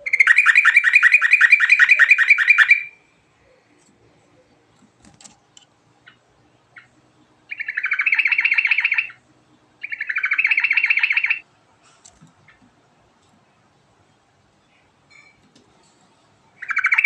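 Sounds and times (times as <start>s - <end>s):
bird trilling song: 0.0s - 3.6s, 6.0s - 9.2s, 9.8s - 11.4s, 16.6s - 17.0s.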